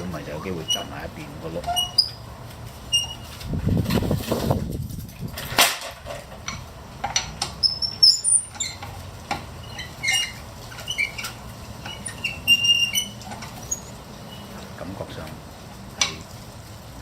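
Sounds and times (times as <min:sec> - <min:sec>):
high squeaks: 0:00.1 - 0:02.3, 0:02.9 - 0:03.4, 0:07.6 - 0:09.0, 0:09.6 - 0:14.6.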